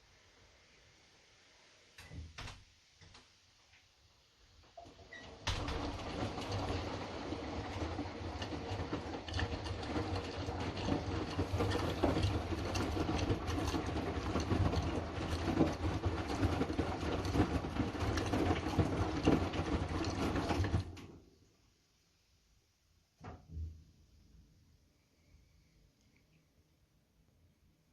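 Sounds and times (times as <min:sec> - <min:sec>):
washing machine motor humming: 0:04.6 - 0:21.3
laundry churning and rattling: 0:04.6 - 0:21.4.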